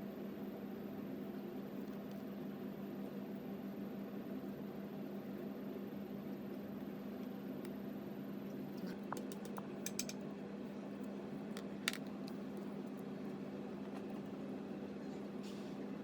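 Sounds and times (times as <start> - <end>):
steady low hum: 0.0 - 16.0
light sharp clicks and taps: 8.8 - 10.2.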